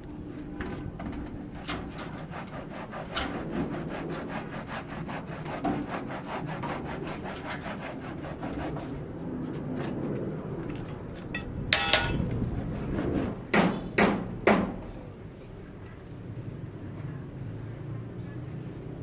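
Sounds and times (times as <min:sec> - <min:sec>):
hand saw cutting wood: 0:01.3 - 0:09.0, 0:12.2 - 0:13.4.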